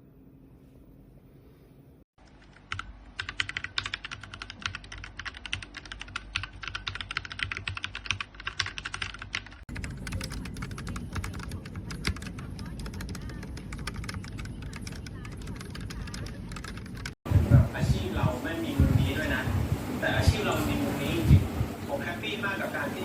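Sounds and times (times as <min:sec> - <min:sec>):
faint hum: 0:00.0 - 0:23.0
mechanical keyboard typing: 0:02.2 - 0:17.2.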